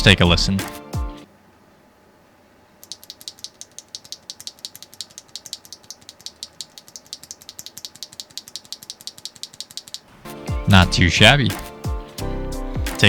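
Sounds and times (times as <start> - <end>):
keyboard switch clacking: 2.8 - 10.1.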